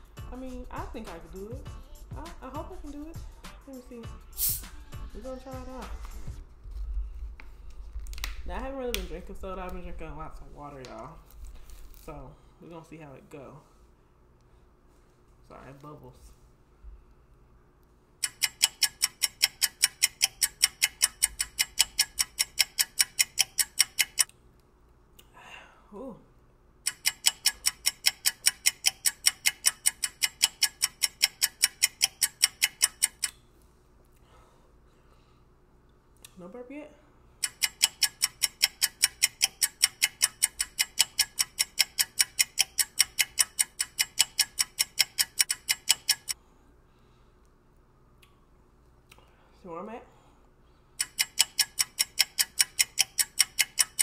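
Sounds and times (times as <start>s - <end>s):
rapid even ticking: 18.2s - 24.3s, 26.8s - 33.3s, 37.4s - 46.4s, 51.0s - 54.0s.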